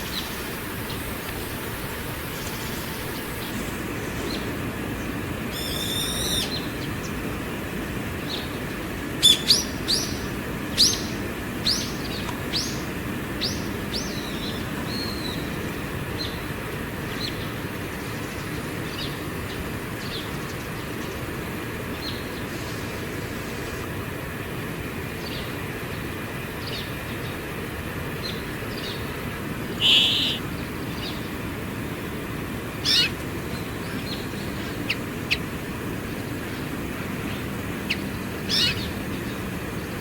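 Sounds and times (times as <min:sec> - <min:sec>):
bird trilling: 0:05.5 - 0:06.8, 0:09.2 - 0:12.8, 0:29.8 - 0:31.2, 0:32.8 - 0:33.2, 0:33.9 - 0:35.5, 0:37.8 - 0:39.0
sharp high bird calls: 0:05.5 - 0:06.8, 0:09.2 - 0:12.8, 0:29.8 - 0:31.2, 0:32.8 - 0:33.2, 0:37.9 - 0:39.0.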